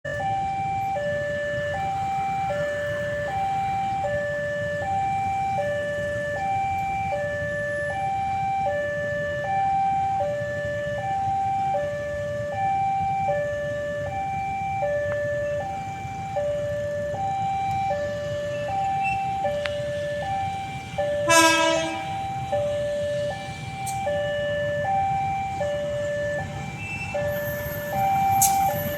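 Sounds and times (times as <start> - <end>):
two-tone electronic warning siren: 0.0 - 28.9.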